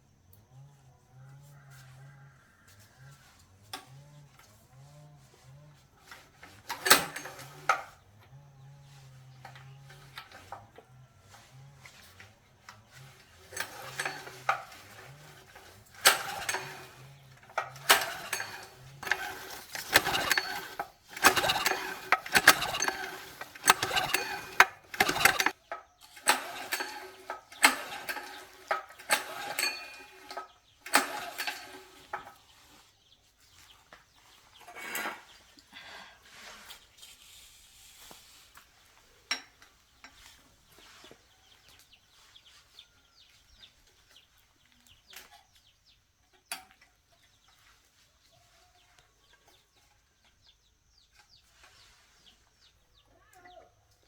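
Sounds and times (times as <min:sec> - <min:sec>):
metal tools clinking and clanking: 0:13.4 - 0:32.4.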